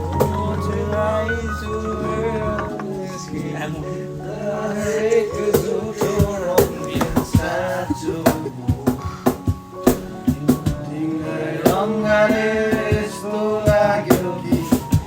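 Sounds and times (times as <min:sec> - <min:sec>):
sung melody: 0:00.0 - 0:15.0
steady drum beat: 0:05.6 - 0:10.9, 0:11.7 - 0:15.0.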